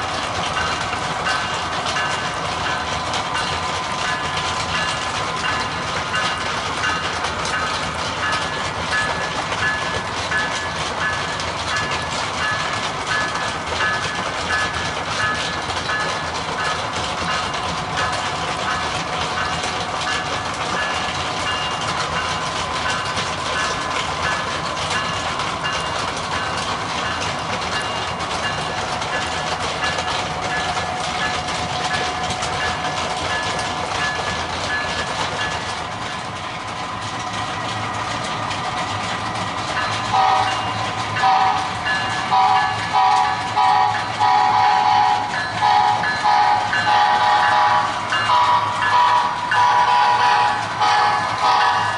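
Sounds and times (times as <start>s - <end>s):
train running: 0.0s - 51.9s
train horn blasts: 40.1s - 40.6s, 41.2s - 51.9s.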